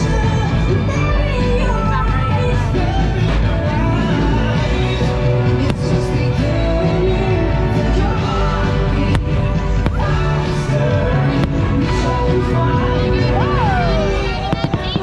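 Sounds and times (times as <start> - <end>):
music with singing over loudspeakers: 0.0 - 15.0
firework cracks: 11.2 - 12.0.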